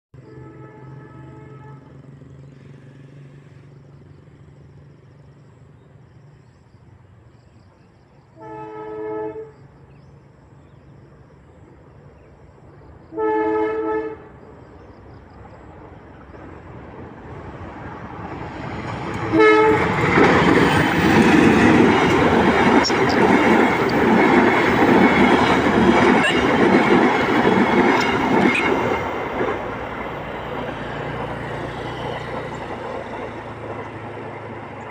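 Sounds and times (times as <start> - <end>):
train horn blasts: 0.2 - 2.2, 8.3 - 9.8, 13.1 - 14.4, 19.3 - 20.0, 26.0 - 26.8
train rumble: 0.2 - 34.9
train wheel clatter: 16.3 - 34.9.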